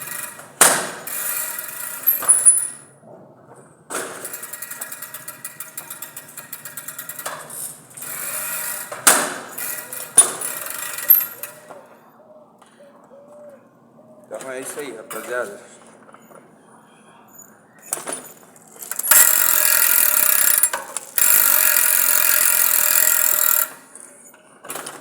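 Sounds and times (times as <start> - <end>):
bicycle freewheel rattling: 0.0 - 2.8, 4.0 - 11.7, 18.5 - 24.0.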